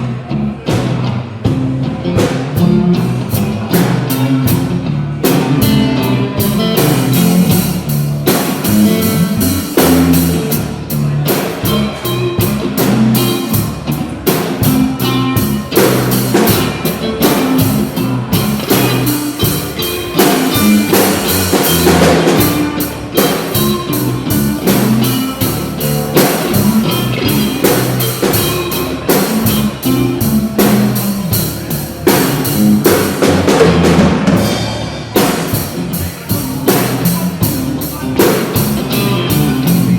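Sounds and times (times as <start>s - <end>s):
drum kit with bass drum: 0.0s - 39.9s
guitar: 0.0s - 39.9s.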